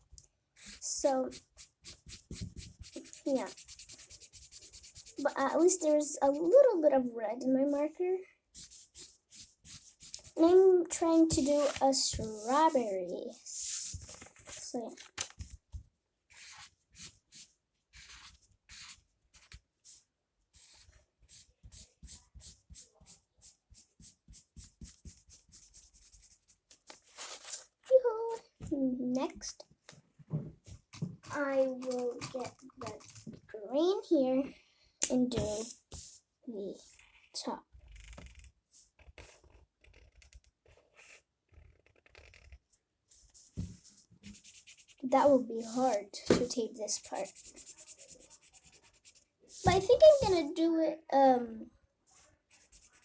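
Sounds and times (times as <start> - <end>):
marker scratching on paper: 0.6 - 5.9, 8.5 - 10.6, 11.3 - 12.9, 13.5 - 14.6, 16.3 - 20.0, 20.6 - 26.5, 35.3 - 36.2, 39.1 - 41.2, 44.2 - 50.5, 52.5 - 53.0.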